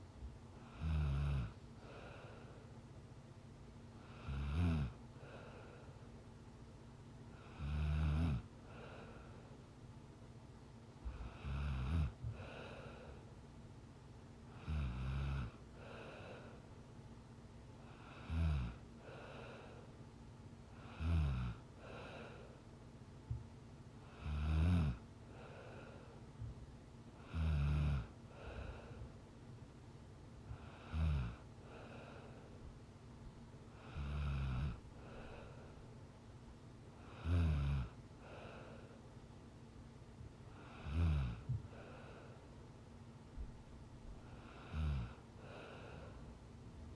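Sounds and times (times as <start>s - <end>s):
faint steady hum: 0.0s - 46.9s
woman snoring: 0.6s - 2.4s, 4.0s - 5.5s, 7.4s - 9.2s, 11.1s - 13.2s, 14.5s - 16.6s, 17.8s - 19.8s, 20.8s - 22.4s, 24.1s - 26.0s, 27.2s - 29.0s, 30.6s - 32.3s, 33.8s - 35.6s, 37.0s - 38.8s, 40.6s - 42.0s, 44.4s - 46.2s
soft breath: 1.5s - 3.2s, 5.1s - 6.6s, 8.5s - 9.8s, 11.0s - 13.8s, 14.5s - 24.3s, 25.2s - 27.4s, 28.0s - 29.4s, 30.4s - 36.2s, 36.9s - 39.2s, 40.4s - 46.9s.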